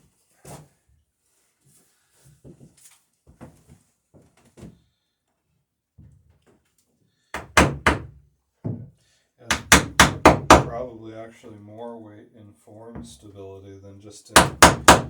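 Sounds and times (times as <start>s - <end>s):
hammer strikes: 7.4s - 8.1s, 9.5s - 10.8s, 14.4s - 15.0s.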